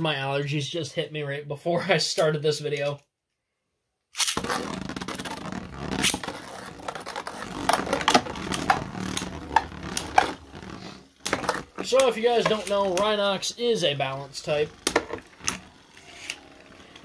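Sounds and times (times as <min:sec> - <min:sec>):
spinning tops scraping: 0:04.2 - 0:17.0.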